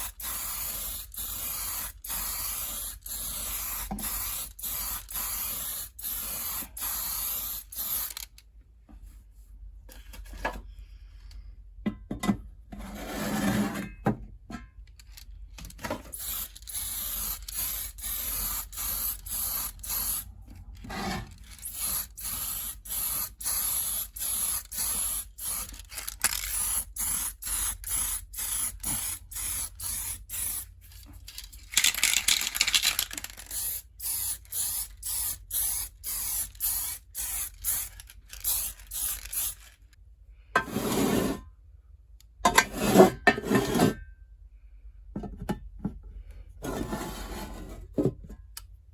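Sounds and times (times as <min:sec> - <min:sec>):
spray paint can hissing: 0:00.0 - 0:08.3, 0:16.1 - 0:20.3, 0:21.3 - 0:30.7, 0:31.7 - 0:39.7.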